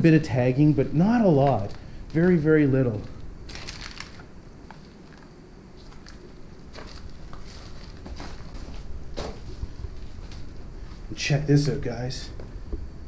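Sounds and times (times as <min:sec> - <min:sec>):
footsteps crunching on littered floor: 0:02.9 - 0:11.2.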